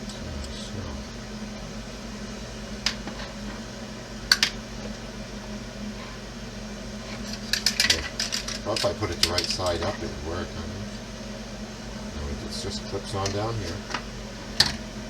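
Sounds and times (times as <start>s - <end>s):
low background hum: 0.0s - 15.0s
plastic parts clicking: 7.3s - 9.6s.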